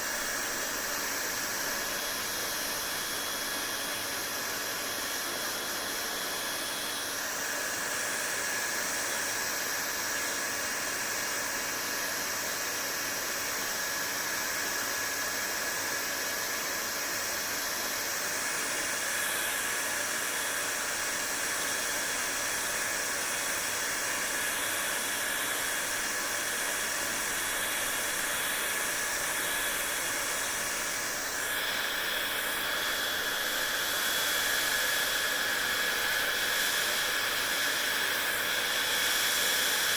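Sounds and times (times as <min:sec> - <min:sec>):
hair dryer blowing air: 0:00.0 - 0:39.9
hair dryer motor whine: 0:00.0 - 0:39.9.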